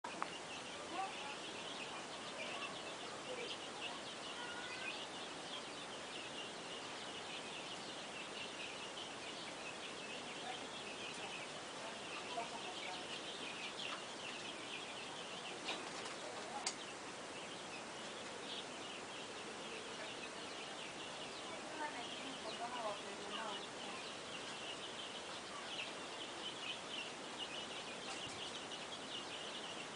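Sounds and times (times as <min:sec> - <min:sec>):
chickens calling: 0:00.1 - 0:29.9.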